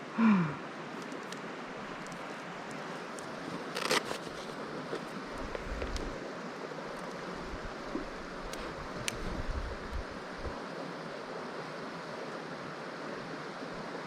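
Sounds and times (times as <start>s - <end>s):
stream flowing: 0.0s - 14.0s.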